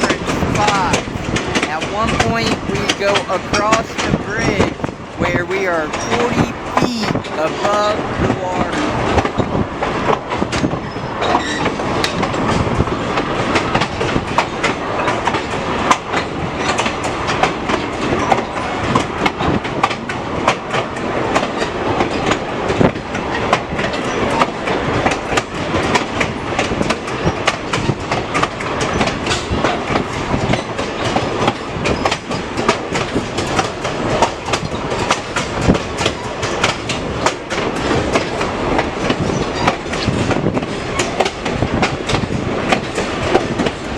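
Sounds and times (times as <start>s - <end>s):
train car rumble and rattle: 8.0s - 43.9s
train wheels clattering over rails: 9.7s - 43.9s.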